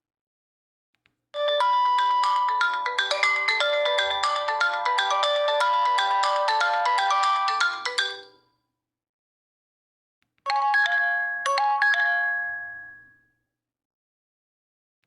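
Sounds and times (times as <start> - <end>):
bell-like ringtone notes: 1.4 - 8.4, 10.5 - 13.2
bright chime-like ringtone melody: 1.4 - 8.4, 10.5 - 13.2.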